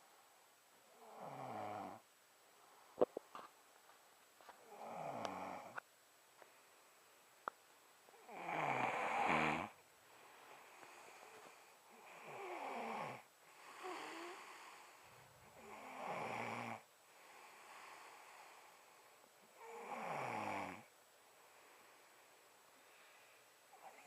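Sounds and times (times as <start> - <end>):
quiet breathing: 0.0 - 3.6, 4.4 - 7.3, 8.0 - 24.0
man snoring: 0.9 - 2.0, 4.6 - 5.8, 8.1 - 9.8, 10.8 - 15.0, 15.6 - 18.7, 19.6 - 20.9.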